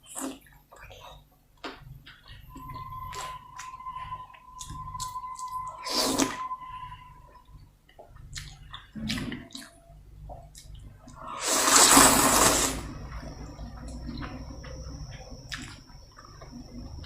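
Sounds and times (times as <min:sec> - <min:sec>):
slurping noodle soup: 0:11.2 - 0:13.0.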